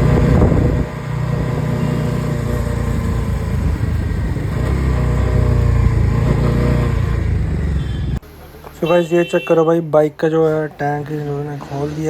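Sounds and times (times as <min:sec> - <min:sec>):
motorcycle engine running: 0:00.0 - 0:08.2.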